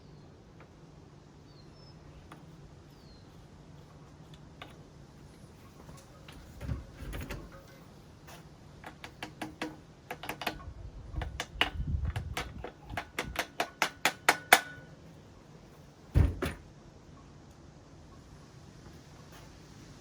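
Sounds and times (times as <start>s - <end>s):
metal parts clicking and knocking: 6.0s - 14.9s
heavy thud: 16.2s - 16.6s.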